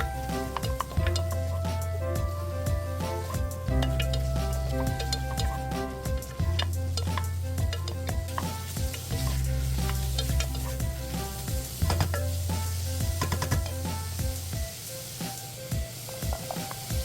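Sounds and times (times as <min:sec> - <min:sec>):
utensil scraping a pan: 0:00.0 - 0:01.9, 0:03.0 - 0:14.2
background music: 0:00.0 - 0:17.0
food sizzling in a pan: 0:00.0 - 0:17.0.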